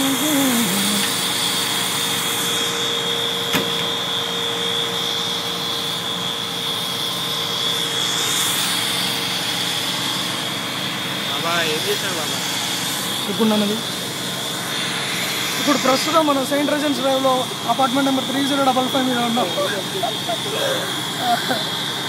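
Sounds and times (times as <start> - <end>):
fire engine drone: 0.0 - 22.0
steady high-pitched tone: 0.0 - 22.0.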